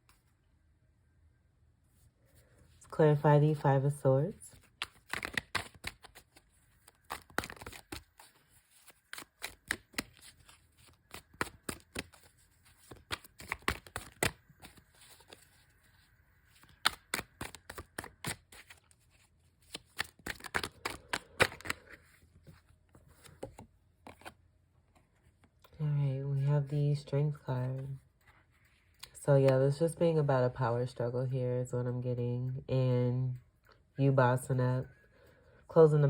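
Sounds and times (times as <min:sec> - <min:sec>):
cards being shuffled: 0:04.5 - 0:24.4.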